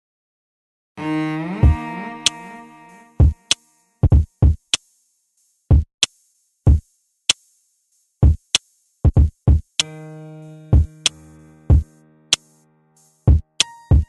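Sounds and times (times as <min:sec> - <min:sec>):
drum machine beat: 0:01.6 - 0:02.4, 0:03.2 - 0:04.8, 0:05.7 - 0:06.9, 0:08.2 - 0:09.9, 0:10.7 - 0:11.9, 0:13.3 - 0:14.0.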